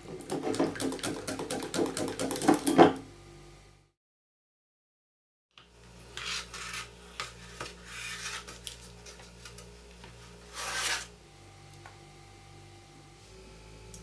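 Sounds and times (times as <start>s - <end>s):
rough scraping strokes: 6.2s - 8.6s, 10.5s - 11.1s.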